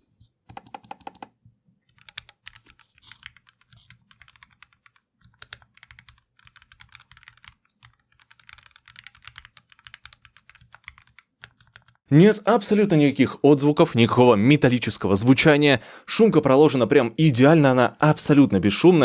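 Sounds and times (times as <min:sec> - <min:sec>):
mechanical keyboard typing: 0:00.5 - 0:12.0.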